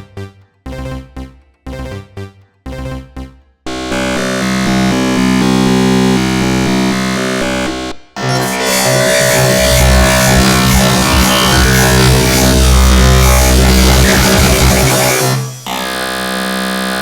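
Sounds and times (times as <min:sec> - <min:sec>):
layered sustained synth tones: 0:03.7 - 0:16.9
short synth chord stabs: 0:03.7 - 0:17.0.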